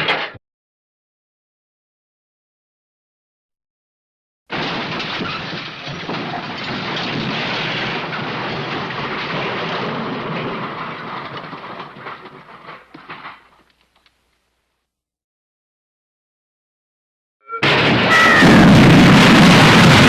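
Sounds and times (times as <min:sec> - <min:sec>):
crash of smashing debris: 0:04.5 - 0:14.0, 0:17.6 - 0:20.0.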